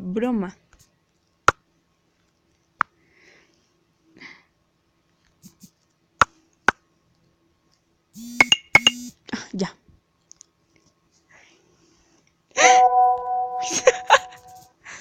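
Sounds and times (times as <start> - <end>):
soft sniff-like breaths: 5.4 - 5.8, 11.1 - 12.4.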